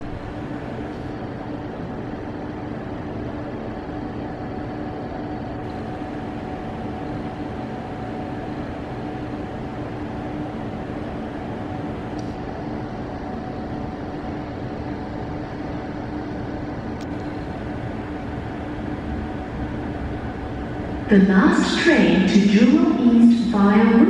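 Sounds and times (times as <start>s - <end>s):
low rumbling drone: 16.6s - 24.0s.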